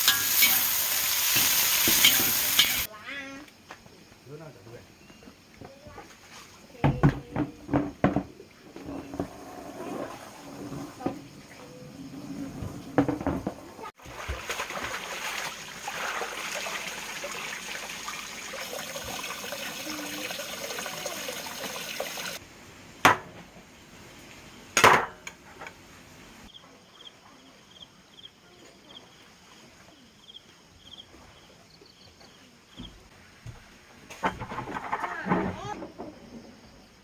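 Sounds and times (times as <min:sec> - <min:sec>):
water running: 0:00.0 - 0:02.9, 0:10.0 - 0:22.4.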